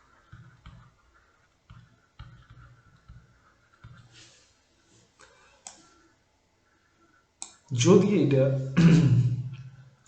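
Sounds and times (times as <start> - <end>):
pen scratching and tapping: 0.1 - 1.0, 1.6 - 4.1.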